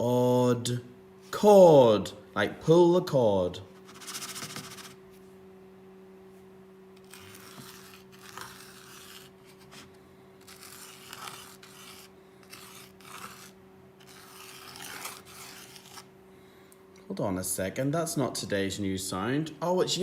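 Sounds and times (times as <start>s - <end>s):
steady low hum: 0.0s - 20.0s
pen scratching on paper: 3.9s - 5.0s, 7.0s - 9.8s, 10.5s - 16.0s.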